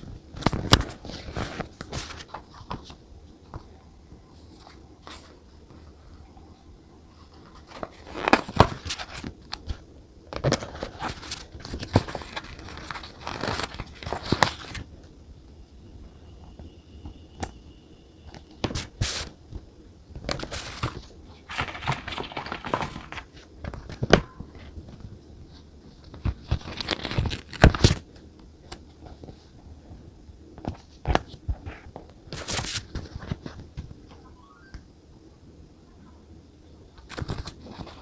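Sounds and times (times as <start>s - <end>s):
paper crinkling and rustling: 0.0s - 6.3s, 7.1s - 15.0s, 18.6s - 19.4s, 20.2s - 30.0s, 30.6s - 34.0s, 37.0s - 38.0s.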